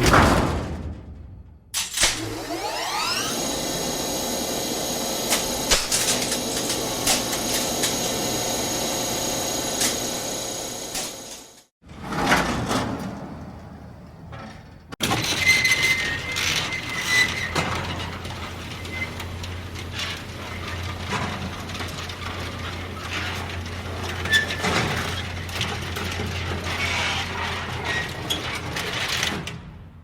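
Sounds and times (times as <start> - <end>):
mechanical whirring and clicking: 1.8 - 11.7.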